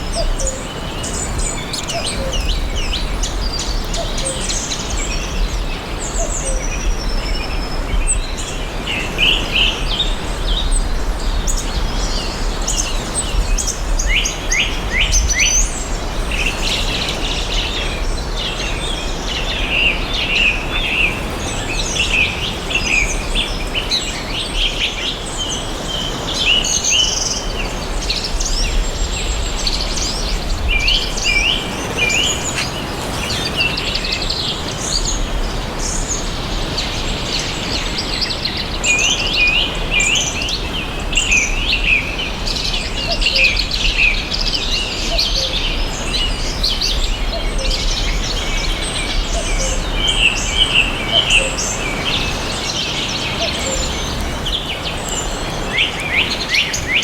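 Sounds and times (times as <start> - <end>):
songbirds chirping and singing: 0.0 - 57.0
background hiss: 25.0 - 37.8.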